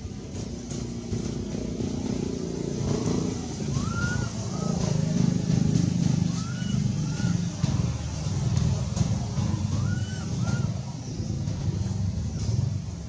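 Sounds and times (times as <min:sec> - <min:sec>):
vehicle engine rumble passing: 0:00.0 - 0:13.0
chirp-like calls: 0:03.5 - 0:05.3, 0:06.3 - 0:08.1, 0:09.2 - 0:12.6.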